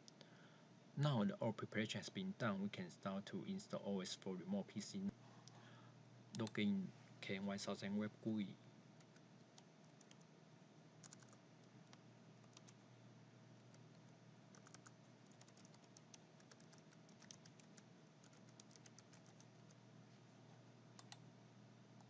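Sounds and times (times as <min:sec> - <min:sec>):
low steady hum: 0:00.0 - 0:22.0
keyboard typing: 0:09.0 - 0:10.3, 0:11.0 - 0:12.8, 0:13.6 - 0:19.8, 0:21.0 - 0:21.2.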